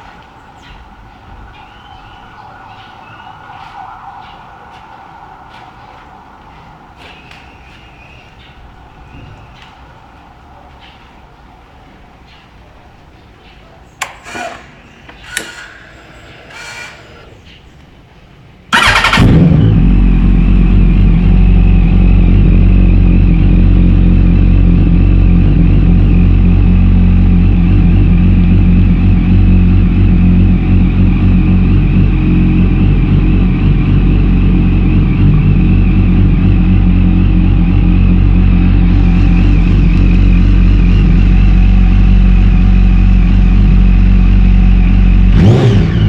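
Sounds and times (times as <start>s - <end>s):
motorcycle engine starting and idling: 18.7s - 46.0s.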